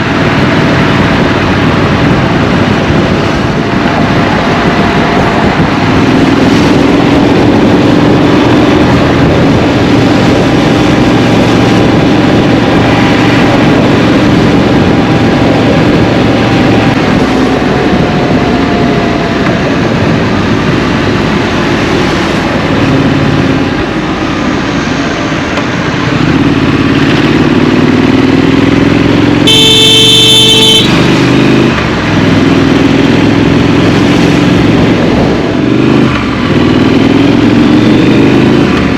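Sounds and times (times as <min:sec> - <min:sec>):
motorcycle engine running: 0:25.9 - 0:38.9
vehicle horn: 0:29.4 - 0:31.1.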